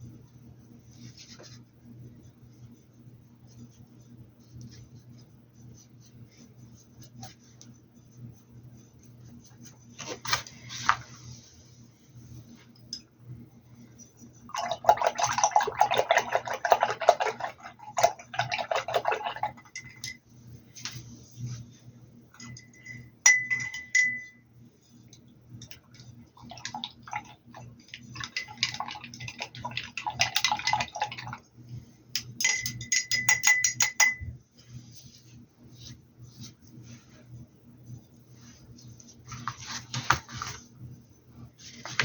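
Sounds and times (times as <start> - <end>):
paintbrush rattling in glass jar: 14.6 - 20.2, 22.4 - 24.4, 28.0 - 31.4, 32.4 - 34.3
ringing glass clink: 22.4 - 24.4, 32.4 - 34.3.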